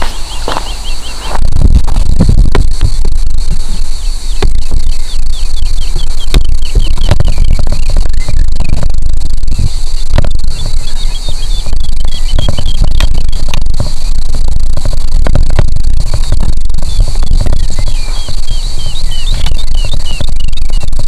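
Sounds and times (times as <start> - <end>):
bird chirping rapidly: 0.0 - 1.6, 3.6 - 8.8, 9.7 - 13.0, 17.7 - 20.8
grasshoppers buzzing: 0.0 - 21.0
sharp clicks: 0.0 - 21.0
wind buffeting microphone: 0.0 - 21.0.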